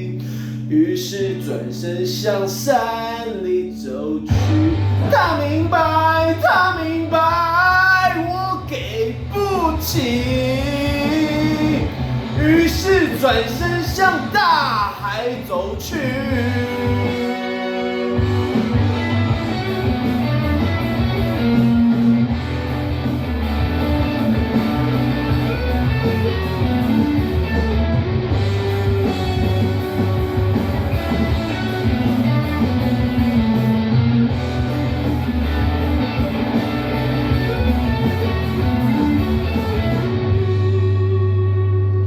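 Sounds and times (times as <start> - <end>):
instrumental rock music with guitar: 0.0 - 42.0.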